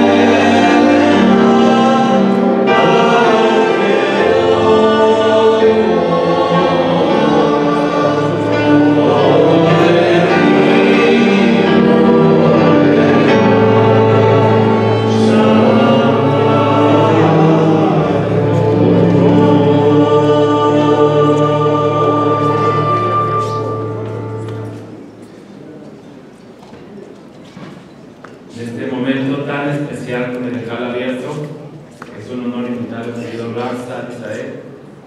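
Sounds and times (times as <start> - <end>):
choir singing held notes: 0.0 - 26.3.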